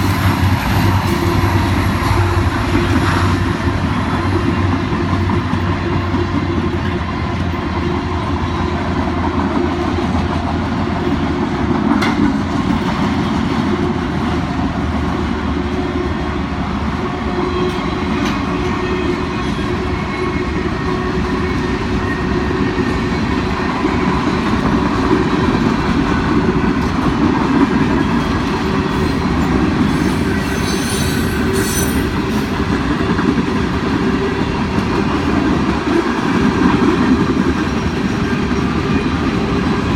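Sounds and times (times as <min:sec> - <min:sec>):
freight train wheels on rails: 0:00.0 - 0:39.9
high-pitched wheel squeal: 0:28.9 - 0:32.5.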